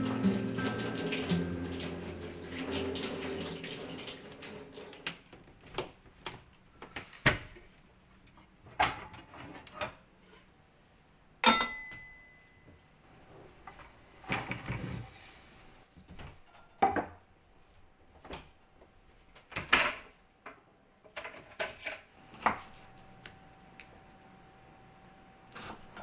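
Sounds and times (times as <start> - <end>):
water running from a tap: 0.0 - 5.3.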